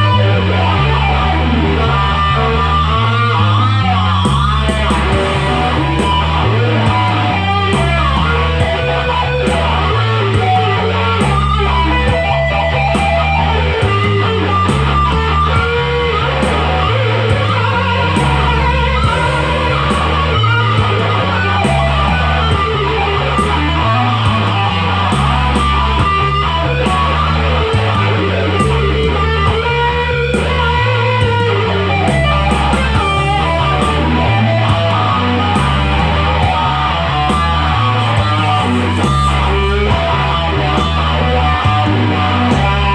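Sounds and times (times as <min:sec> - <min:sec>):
bass line: 0:00.0 - 0:42.9
electric guitar lead: 0:00.0 - 0:42.9
regular beat: 0:00.8 - 0:29.0, 0:37.7 - 0:41.9.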